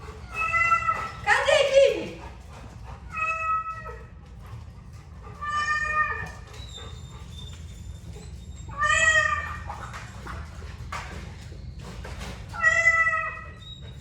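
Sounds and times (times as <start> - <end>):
cat meowing: 5.4 - 6.4, 8.7 - 9.7, 12.6 - 13.6.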